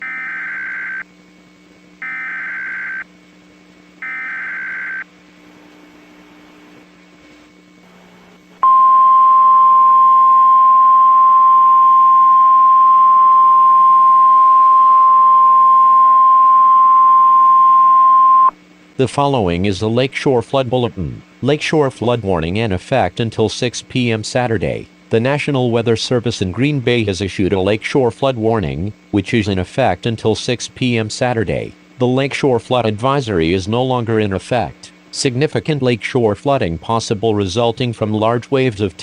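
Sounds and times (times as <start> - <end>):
steady warning alarm tone: 0.0 - 1.2, 2.0 - 3.1, 4.0 - 5.1, 8.6 - 18.6
faint hum and hiss: 0.0 - 39.0
buzzy data tones: 2.0 - 3.1, 4.0 - 6.8.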